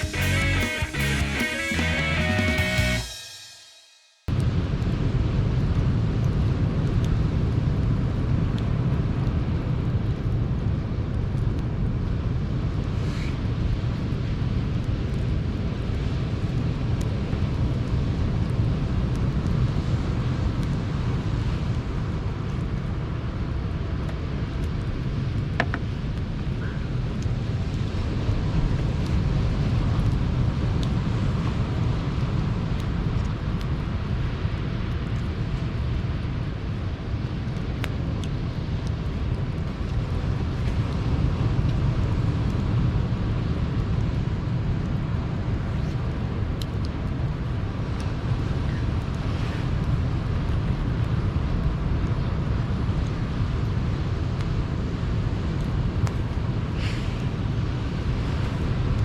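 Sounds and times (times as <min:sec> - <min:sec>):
campfire crackles: 0:04.3 - 0:59.0
wind on microphone: 0:04.3 - 0:59.0
sea surf washing on shore: 0:12.1 - 0:59.0.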